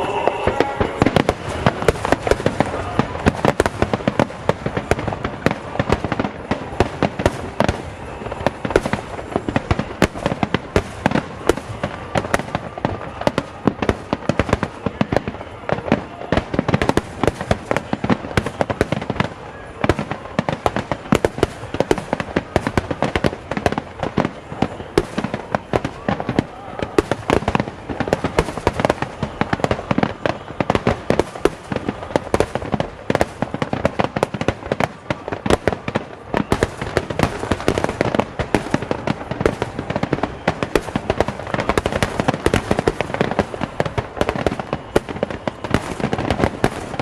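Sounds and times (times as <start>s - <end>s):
fireworks bursting: 0.0s - 47.0s.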